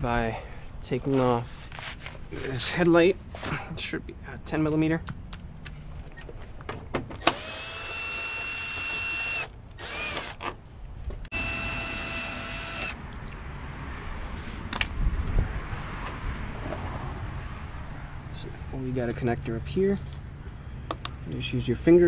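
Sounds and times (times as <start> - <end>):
power driver whining: 7.2 - 10.5, 11.3 - 13.0.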